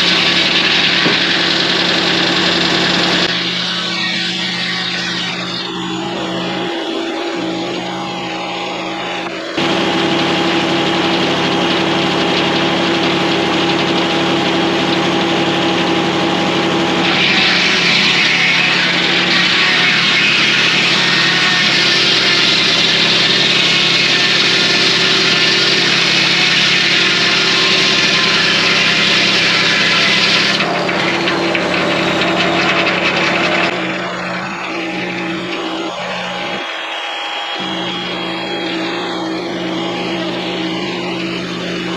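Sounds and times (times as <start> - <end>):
diesel engine humming: 0.0 - 3.6, 5.7 - 21.0, 27.4 - 36.8
saw blade cutting log: 0.0 - 41.9.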